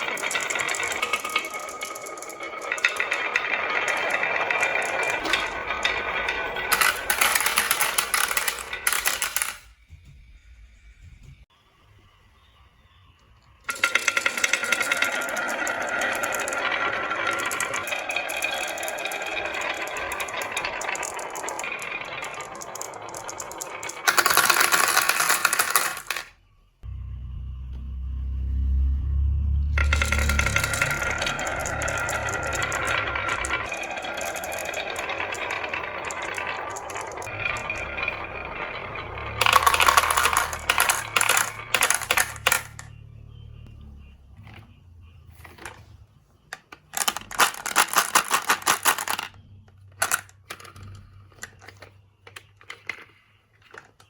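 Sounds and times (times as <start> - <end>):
marbles rattling down wooden run: 0.0 - 9.7, 13.7 - 26.3, 29.8 - 43.0, 46.9 - 49.4, 50.0 - 50.8.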